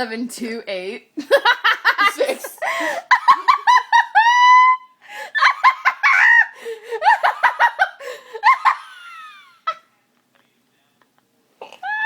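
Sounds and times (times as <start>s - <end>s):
women laughing high-pitched: 1.2s - 9.8s.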